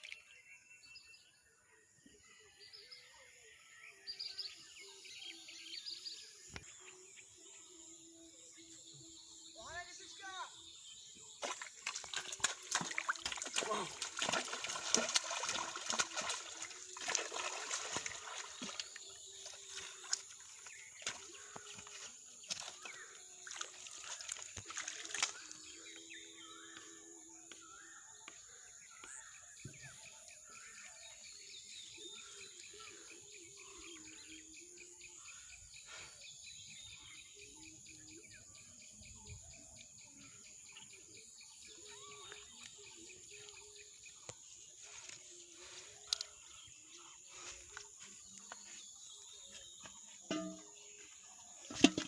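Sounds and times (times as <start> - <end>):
pond water splashing: 0.0 - 0.3, 10.6 - 35.4, 40.5 - 52.0
birds chirping: 0.0 - 52.0.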